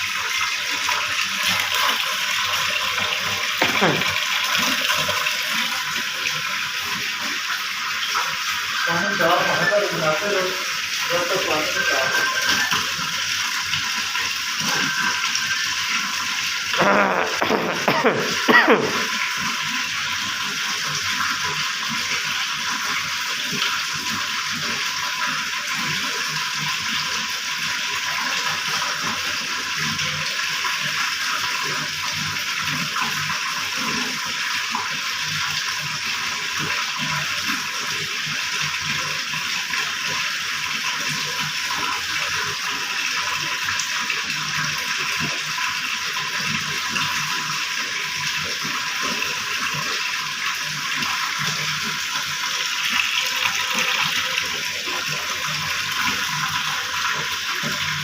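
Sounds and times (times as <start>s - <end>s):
water rushing: 0.8s - 7.4s, 8.6s - 13.8s, 16.6s - 19.8s.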